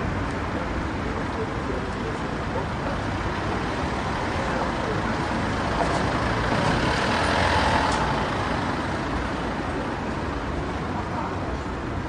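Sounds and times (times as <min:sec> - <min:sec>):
vehicle driving past: 0:06.1 - 0:09.4.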